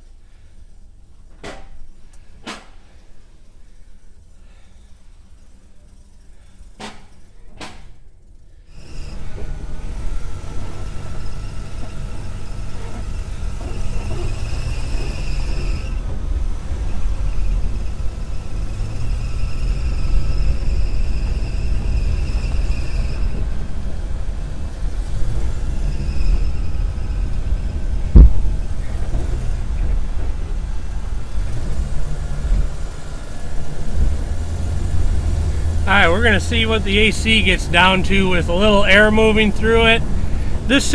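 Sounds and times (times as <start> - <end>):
car engine rumbling: 33.6 - 40.9.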